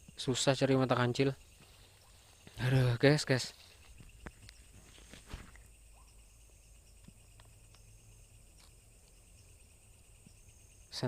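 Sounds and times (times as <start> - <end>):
night insects chirring: 0.0 - 11.0
footsteps in brush: 3.5 - 5.7.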